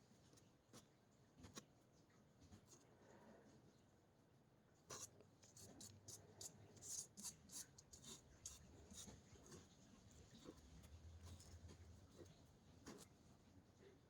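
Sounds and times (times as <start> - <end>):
faint scratching and rubbing: 4.9 - 13.9.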